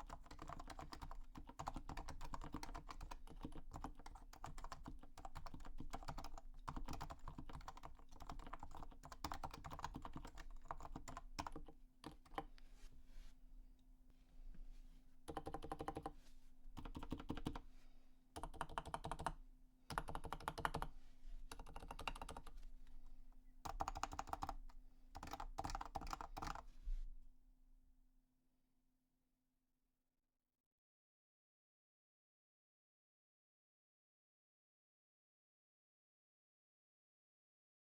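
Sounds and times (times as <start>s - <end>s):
keyboard typing: 0.0s - 12.6s, 15.3s - 16.2s, 16.8s - 17.6s, 18.4s - 20.9s, 21.5s - 22.6s, 23.6s - 26.6s.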